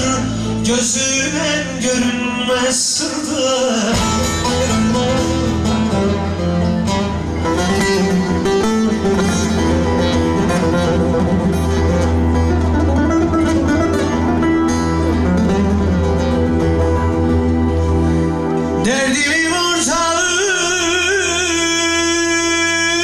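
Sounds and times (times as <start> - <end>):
steady bass accompaniment: 0.0 - 23.0
plucked lute melody: 3.9 - 19.5.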